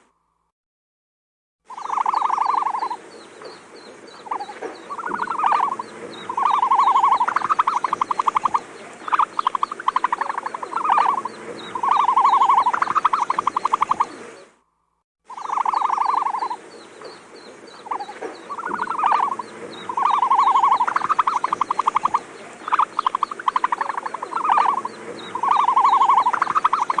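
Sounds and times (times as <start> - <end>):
faint high chirping: 1.7 - 14.7, 15.3 - 27.0
pulsing animal trills: 4.1 - 14.4, 15.3 - 27.0.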